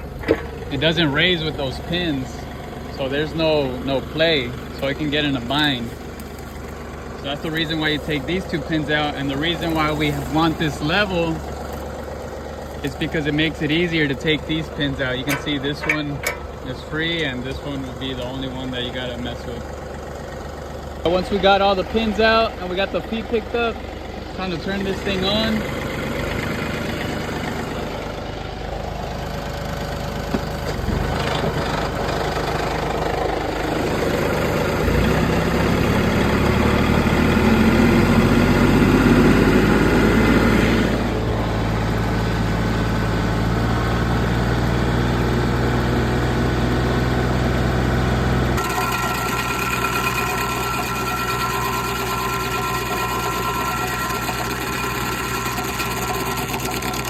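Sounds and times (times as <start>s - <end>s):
stump grinder engine running: 0.0s - 57.0s.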